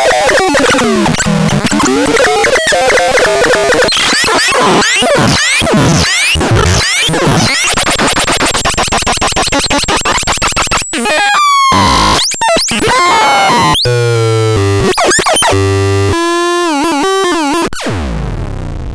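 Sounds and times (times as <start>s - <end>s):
synthesizer harsh electronic noises: 0.0s - 18.9s.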